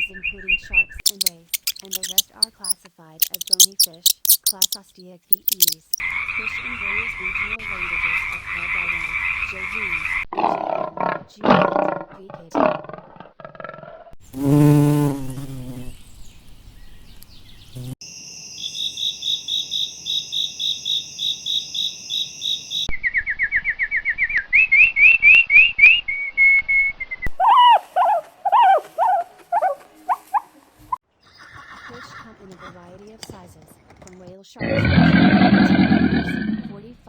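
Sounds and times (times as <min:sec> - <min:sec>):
bird chirps and calls: 0:00.0 - 0:07.0, 0:18.5 - 0:22.9
rhythmic high-pitched chirping: 0:01.0 - 0:06.0.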